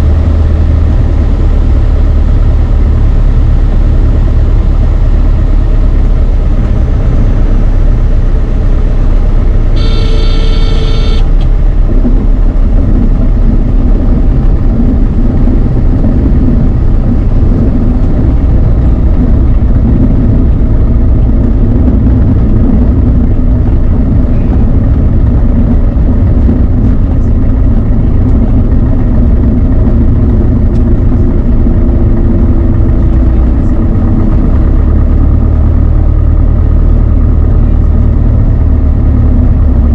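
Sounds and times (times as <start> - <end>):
aircraft engine droning: 0.0 - 39.9
electronic warning tone: 9.8 - 11.4.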